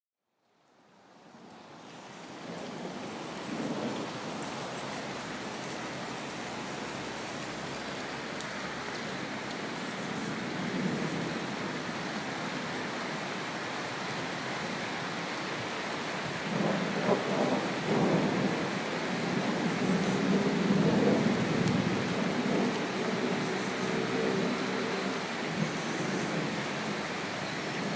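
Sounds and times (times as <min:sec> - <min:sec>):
rain hissing: 0:01.0 - 0:27.9
thunder rumbling: 0:02.8 - 0:04.4, 0:16.4 - 0:27.9.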